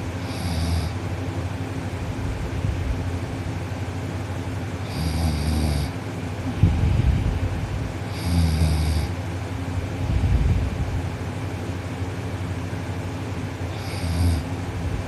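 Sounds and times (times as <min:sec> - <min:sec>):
loud snoring: 0:00.2 - 0:01.0, 0:04.8 - 0:06.0, 0:08.1 - 0:09.2, 0:13.7 - 0:14.5.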